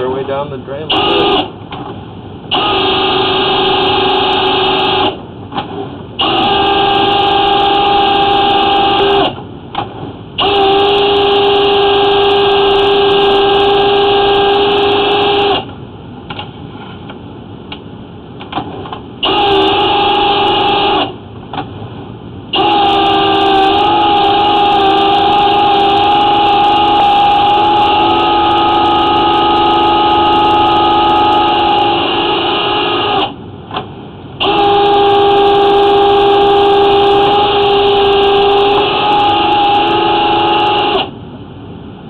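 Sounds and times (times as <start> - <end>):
drain cleaning machine whine: 6.2 - 9.4, 19.2 - 21.1, 22.5 - 33.4, 34.4 - 41.2.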